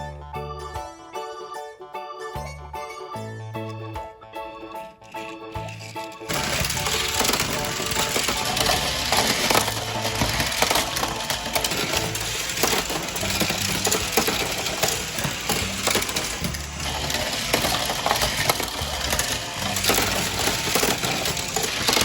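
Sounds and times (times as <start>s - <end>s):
toy vehicles clattering on plastic track: 5.0s - 22.0s.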